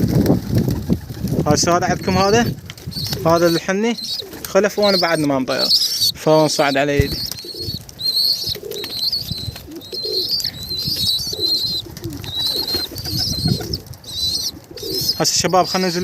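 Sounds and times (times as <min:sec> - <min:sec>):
pigeons cooing: 0:00.8 - 0:16.0.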